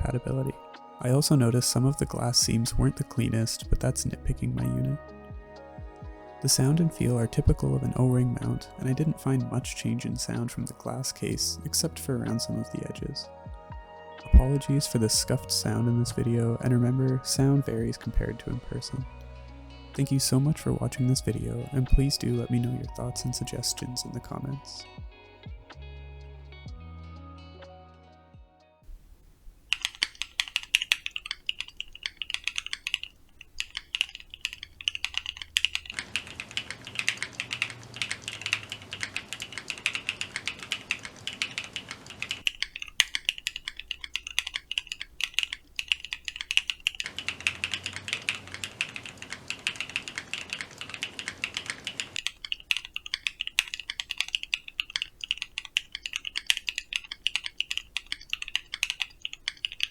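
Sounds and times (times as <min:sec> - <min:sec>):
mechanical keyboard clacking: 0:29.7 - 0:59.9.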